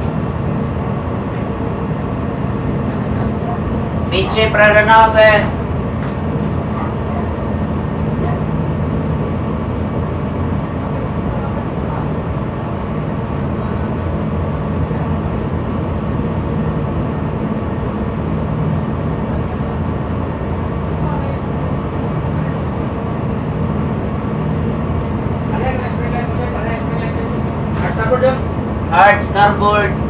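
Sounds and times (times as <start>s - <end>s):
ship machinery hum: 0.0s - 30.0s.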